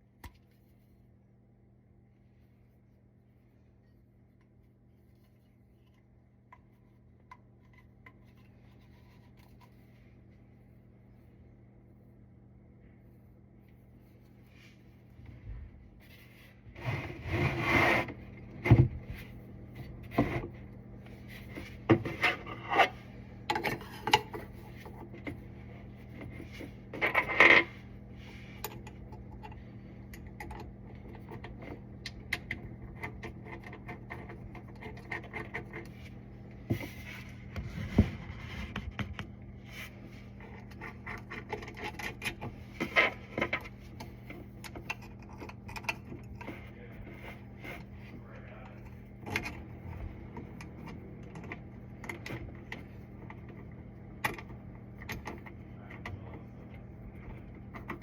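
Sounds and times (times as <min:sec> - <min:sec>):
faint low hum: 0:00.0 - 0:58.0
scraping and rubbing of parts: 0:14.0 - 0:58.0.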